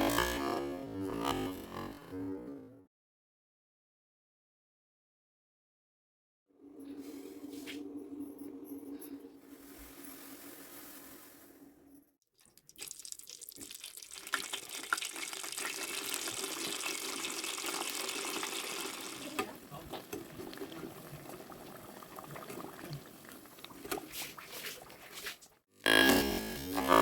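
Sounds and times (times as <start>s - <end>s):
food deep-frying in oil: 12.4s - 25.3s.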